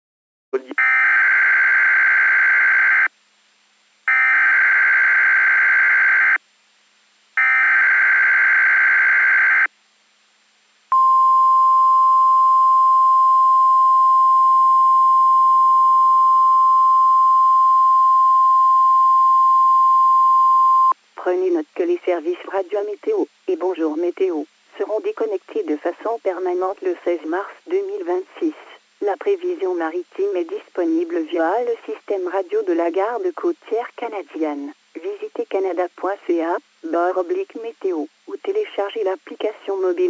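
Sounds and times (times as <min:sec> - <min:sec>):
steady alarm tone: 0:00.8 - 0:03.1, 0:04.1 - 0:06.4, 0:07.4 - 0:09.7.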